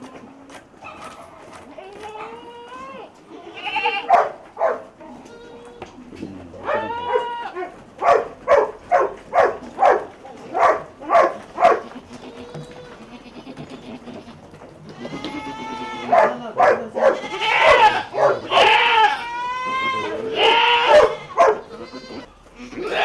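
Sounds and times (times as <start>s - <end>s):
goats bleating: 1.6s - 4.2s, 5.0s - 7.8s, 11.4s - 23.0s.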